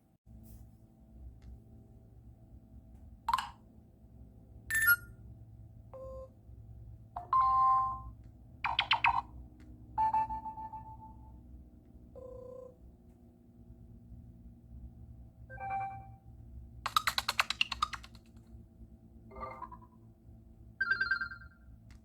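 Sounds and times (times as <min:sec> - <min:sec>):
phone notification chimes and beeps: 0:04.7 - 0:05.0, 0:07.2 - 0:08.1, 0:10.0 - 0:11.3, 0:15.5 - 0:16.2, 0:19.3 - 0:19.9, 0:20.8 - 0:21.6.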